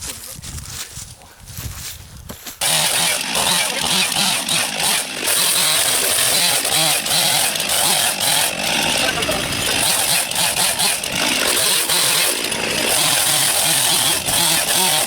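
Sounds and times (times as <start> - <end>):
small gasoline engine running: 2.6 - 15.0.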